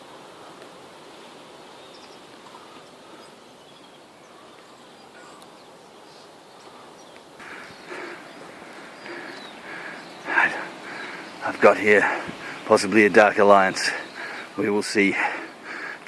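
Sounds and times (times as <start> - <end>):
rustling open-air hiss: 0.0 - 16.0
faint bird chirps: 1.7 - 12.9.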